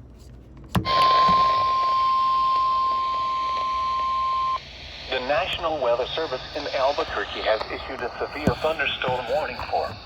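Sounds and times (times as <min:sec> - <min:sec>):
radio static hiss: 0:00.9 - 0:10.0.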